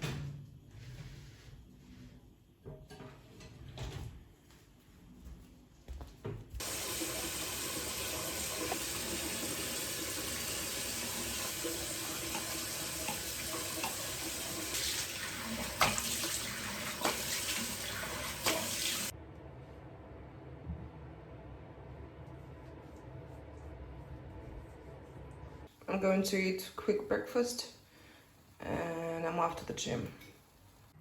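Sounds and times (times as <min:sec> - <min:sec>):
water tap running into sink: 0:06.6 - 0:19.1.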